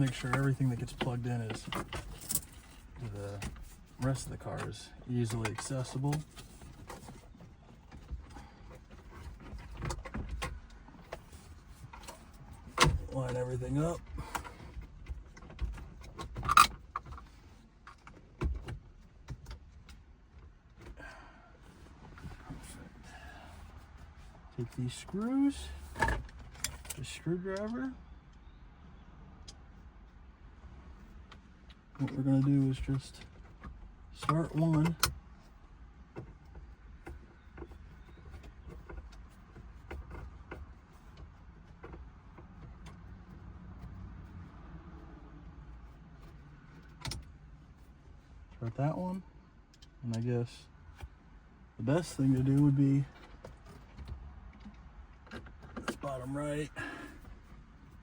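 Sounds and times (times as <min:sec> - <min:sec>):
clicks and knocks of metal and plastic: 0:00.0 - 0:21.0, 0:25.8 - 0:27.9, 0:36.0 - 0:44.4, 0:52.3 - 0:56.1
low steady rumble: 0:00.0 - 0:58.0.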